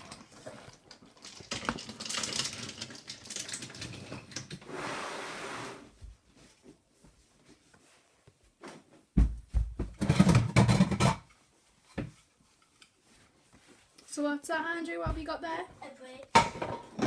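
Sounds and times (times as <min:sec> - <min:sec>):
toy train track clicking: 0:01.2 - 0:04.6
rustling: 0:11.2 - 0:16.1.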